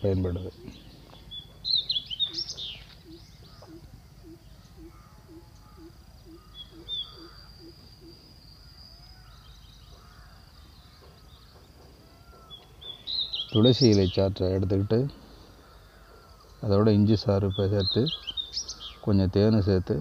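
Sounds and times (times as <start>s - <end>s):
bird calling one low note: 0.0s - 8.3s
faint high bird chirps: 0.0s - 14.4s.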